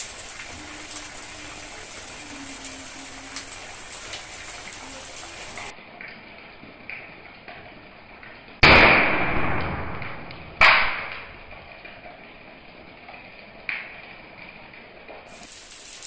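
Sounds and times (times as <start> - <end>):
toy gun pops: 8.7 - 11.3.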